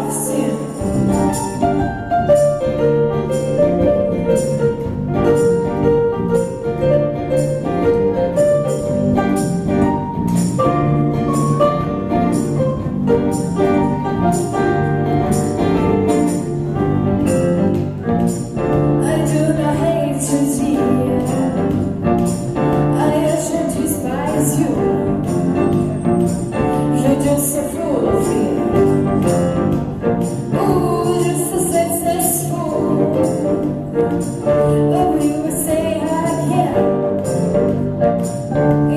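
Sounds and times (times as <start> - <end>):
person singing: 0.0 - 1.2, 19.0 - 22.0
acoustic band playing: 0.0 - 38.9.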